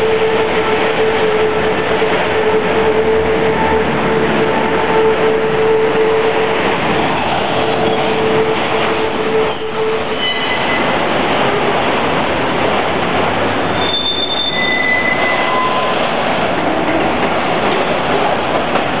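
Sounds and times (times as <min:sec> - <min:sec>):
train wheels rumbling on rails: 0:00.0 - 0:19.0
wheel squeals: 0:09.4 - 0:10.9, 0:13.7 - 0:16.0.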